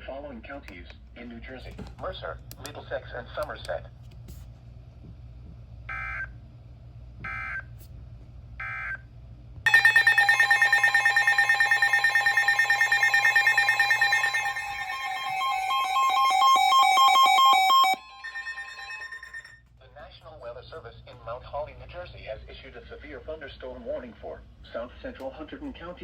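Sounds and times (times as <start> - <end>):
digital data screech bursts: 9.7 - 19.5
two-tone attention signal: 9.7 - 19.6.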